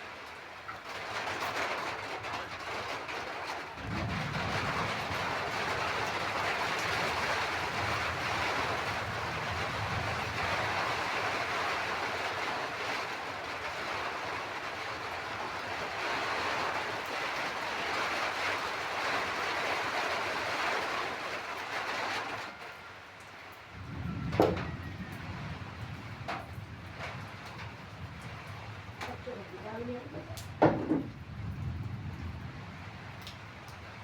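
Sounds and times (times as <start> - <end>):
steady rain: 0.0 - 34.0.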